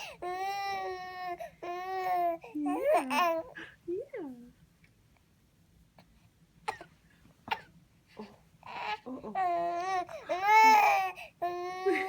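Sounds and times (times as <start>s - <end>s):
baby coughing: 6.7s - 7.7s
baby crying: 8.7s - 12.0s.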